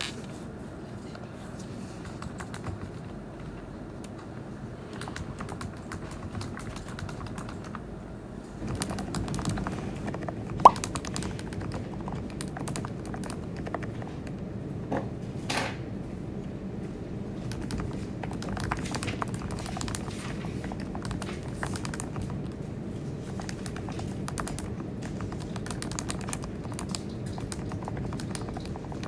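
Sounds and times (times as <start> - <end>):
computer keyboard key clicks: 23.4 - 29.0.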